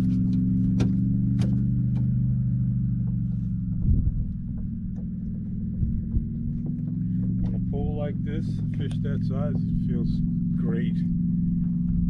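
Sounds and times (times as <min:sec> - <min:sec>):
boat motor idling: 0:00.0 - 0:12.0
low thump: 0:02.9 - 0:08.1.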